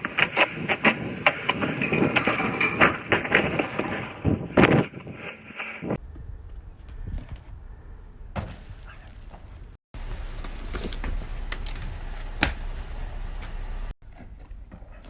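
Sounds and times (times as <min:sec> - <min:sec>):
low outdoor rumble: 0:08.1 - 0:15.0
sharp knocks and scuffs: 0:09.3 - 0:15.0.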